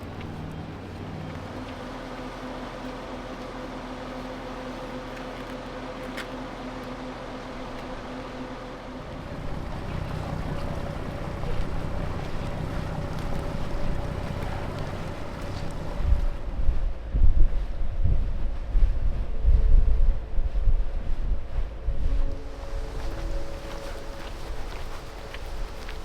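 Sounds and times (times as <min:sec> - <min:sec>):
water noise: 0:00.0 - 0:05.1, 0:07.1 - 0:26.0
motorboat engine running: 0:00.0 - 0:26.0
wind noise: 0:09.0 - 0:26.0.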